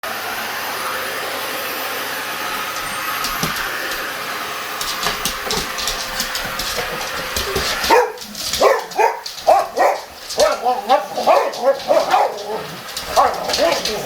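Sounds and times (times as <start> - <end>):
vacuum cleaner running: 0.0 - 14.0
sharp clicks and rattles: 4.8 - 14.0.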